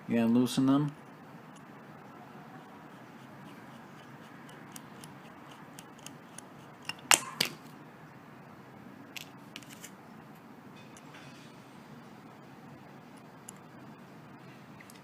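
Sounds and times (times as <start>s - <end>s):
screwdriver clicking on small screws: 3.9s - 7.0s.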